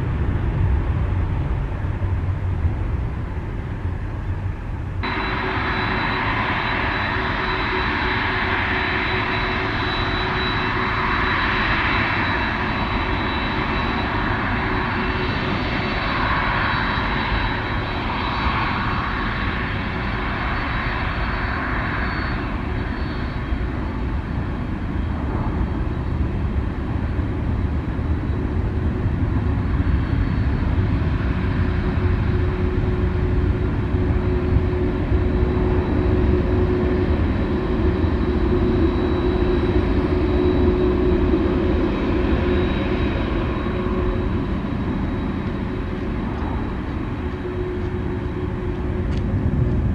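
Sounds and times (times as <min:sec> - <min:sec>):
jet engine whine: 0:00.0 - 0:49.9
deep rumble: 0:43.3 - 0:49.9.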